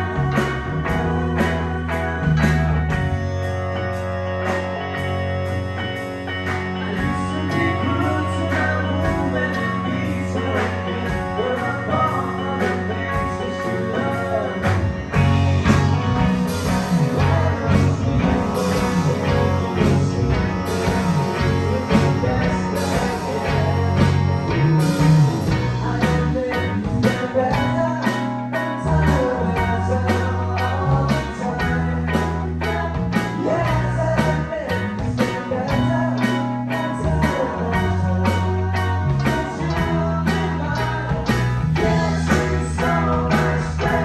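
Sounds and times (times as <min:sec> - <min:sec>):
person singing: 0:00.0 - 0:03.2, 0:06.5 - 0:44.0
bass guitar: 0:00.0 - 0:44.0
drums: 0:00.0 - 0:44.0
electric guitar: 0:00.0 - 0:44.0.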